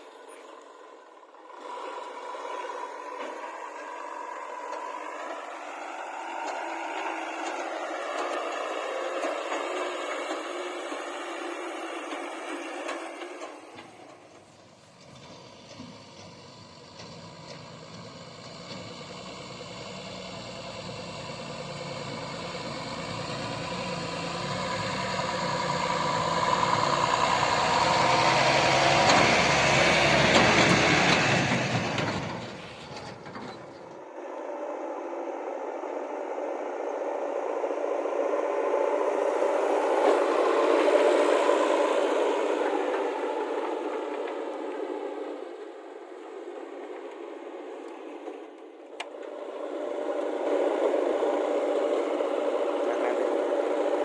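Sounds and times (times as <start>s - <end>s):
thin hissy engine sound: 0.0s - 16.9s, 34.0s - 54.0s
heavy diesel engine running: 0.0s - 54.0s.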